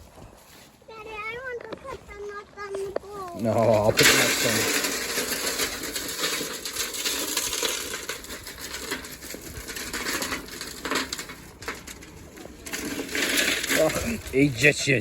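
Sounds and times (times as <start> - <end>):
pellets rattling into a bowl: 3.6 - 14.6.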